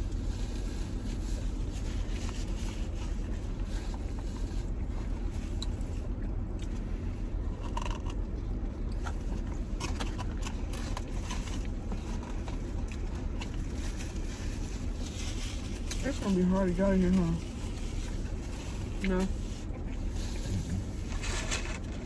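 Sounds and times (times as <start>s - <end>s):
steady low rumble: 0.0s - 22.0s
chewing: 2.0s - 16.0s.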